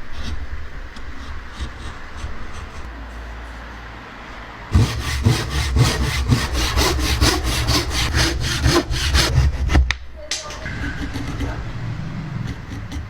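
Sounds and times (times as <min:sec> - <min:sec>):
hand saw cutting wood: 0:04.7 - 0:09.9, 0:10.5 - 0:13.0.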